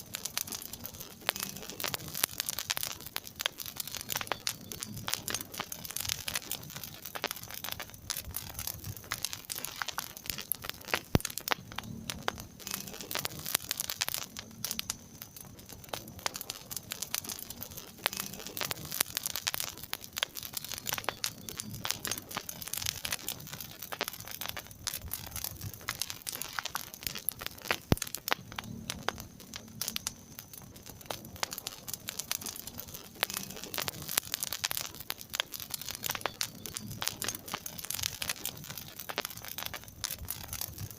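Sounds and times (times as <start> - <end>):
wood fire crackling: 0.0 - 40.9
soft low rumble: 10.2 - 19.1, 24.6 - 34.2.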